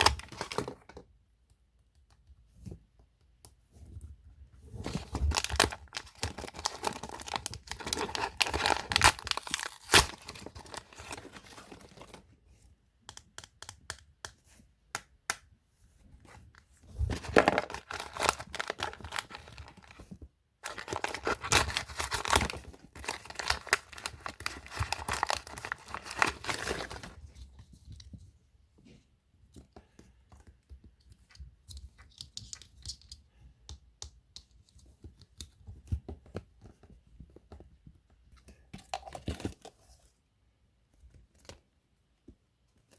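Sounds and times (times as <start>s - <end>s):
packaging tearing and rustling: 4.9s - 12.2s, 17.1s - 20.0s, 20.6s - 27.2s.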